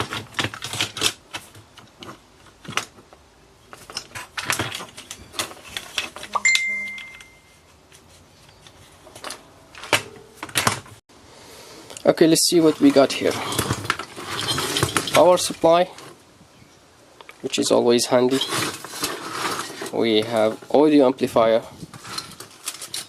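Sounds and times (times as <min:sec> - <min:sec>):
metal and plastic parts clattering: 0:00.0 - 0:07.3, 0:07.9 - 0:11.0, 0:12.5 - 0:16.2, 0:18.2 - 0:20.8, 0:21.8 - 0:23.0
brief metallic ring: 0:06.4 - 0:07.5.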